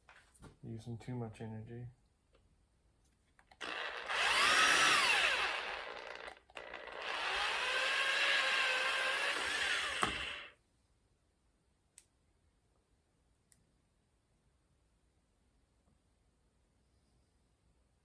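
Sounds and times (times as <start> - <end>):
handheld power drill running: 3.6 - 10.6.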